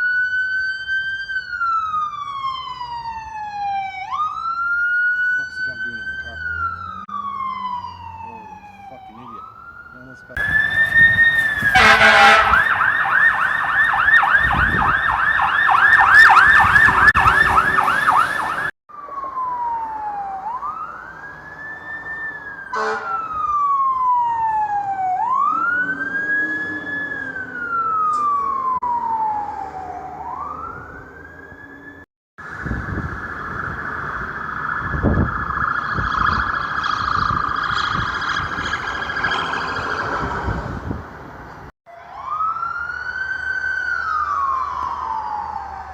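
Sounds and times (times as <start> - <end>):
siren fast yelp: 0.0 - 40.9, 41.9 - 45.9
rapid high siren warble: 0.0 - 41.0, 41.9 - 45.9
siren slow wail: 0.0 - 41.2, 41.9 - 45.9
vehicle engine rumble: 9.5 - 18.7, 32.4 - 41.7.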